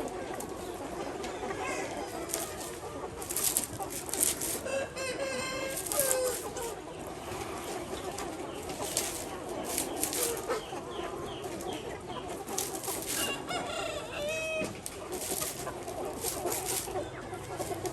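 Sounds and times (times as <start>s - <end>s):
chickens clucking: 0.0s - 17.9s
rooster crowing: 4.6s - 6.6s, 13.2s - 14.7s.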